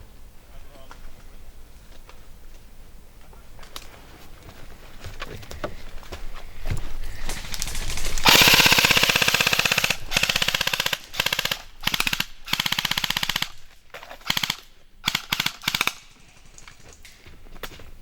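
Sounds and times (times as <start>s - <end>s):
airsoft gun firing bursts: 7.6s - 16.8s.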